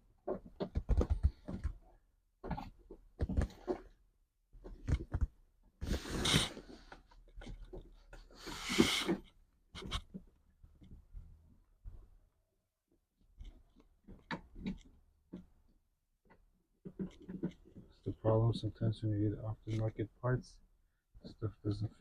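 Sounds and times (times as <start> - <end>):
small clicks and knocks: 0.2 - 4.0, 4.6 - 5.4, 13.2 - 18.0.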